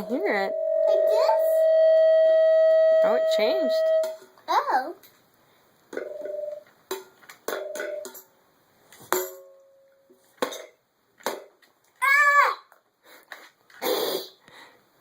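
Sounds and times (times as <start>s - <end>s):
brief pitched notes: 0.0s - 4.2s
clear ringing tone: 0.0s - 4.2s, 6.0s - 6.6s.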